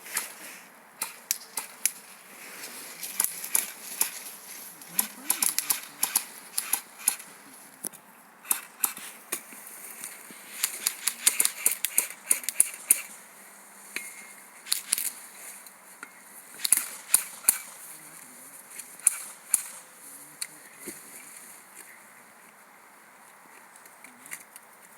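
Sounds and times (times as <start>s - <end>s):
airsoft guns firing: 5.0s - 7.3s, 10.6s - 13.1s, 16.6s - 17.8s, 19.0s - 19.9s.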